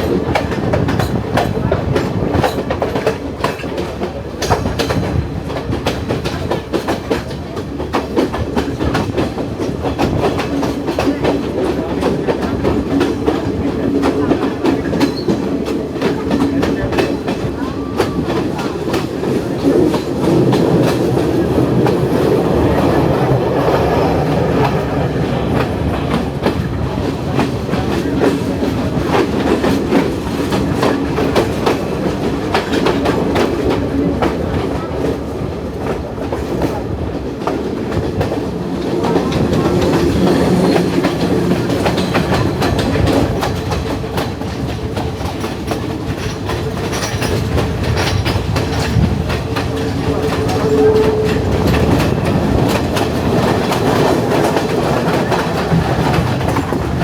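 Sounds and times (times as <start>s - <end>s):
train rumble: 0.0s - 57.0s
wheels clicking over rail joints: 0.0s - 57.0s.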